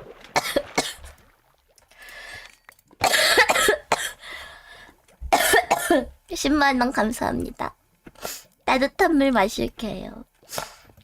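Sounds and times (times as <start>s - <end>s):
woman coughing: 3.0s - 4.2s, 5.4s - 6.1s.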